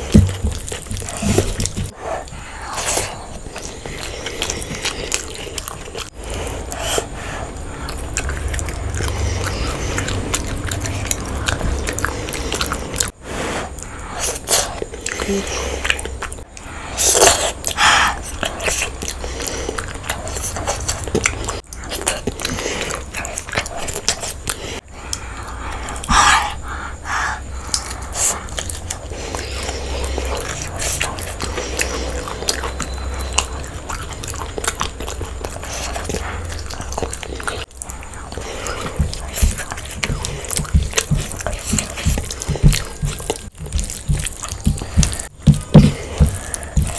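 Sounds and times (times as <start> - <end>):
person chewing food: 0.0 - 46.9
steady low hum: 0.0 - 46.9
crunchy bites: 13.8 - 46.9.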